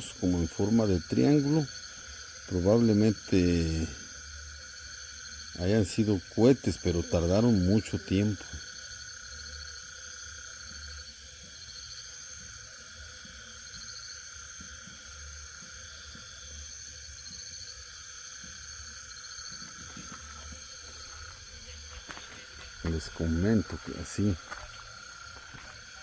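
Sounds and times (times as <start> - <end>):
crickets and insects trilling: 0.0 - 26.0.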